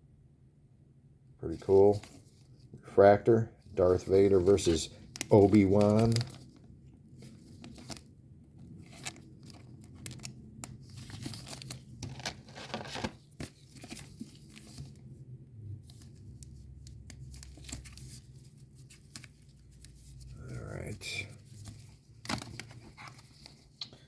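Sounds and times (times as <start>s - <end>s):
foil wrapper crinkling and tearing: 4.1s - 6.6s, 8.8s - 14.6s.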